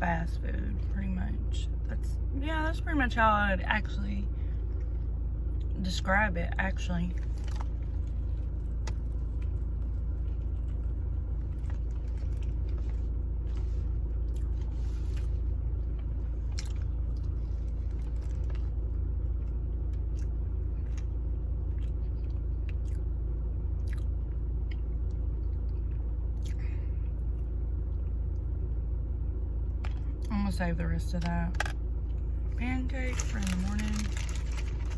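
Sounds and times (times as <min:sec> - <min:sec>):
steady low rumble: 0:00.0 - 0:34.9
person chewing and smacking: 0:07.2 - 0:18.8, 0:19.4 - 0:23.2, 0:23.8 - 0:26.6.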